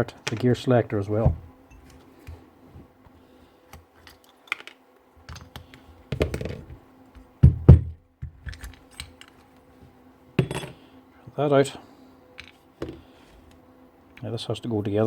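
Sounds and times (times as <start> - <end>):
faint steady hum: 0.0 - 15.0
small parts clicking and knocking: 3.7 - 6.7, 7.4 - 9.5.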